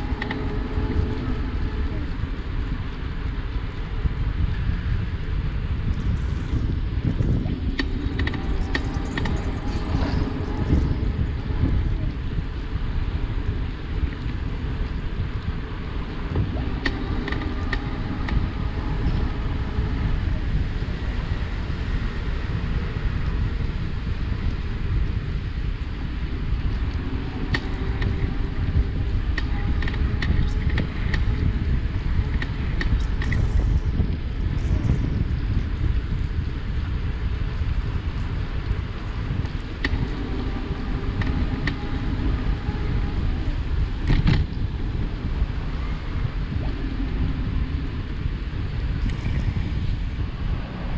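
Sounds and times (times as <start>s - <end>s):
wind rushing over microphone: 0.0s - 50.9s
bicycle crank creaking: 5.9s - 50.6s.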